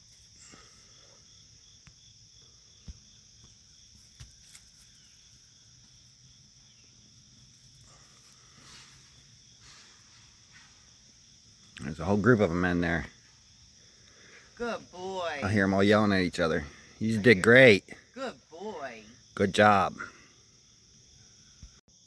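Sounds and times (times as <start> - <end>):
faint insect chorus: 0.0 - 22.0.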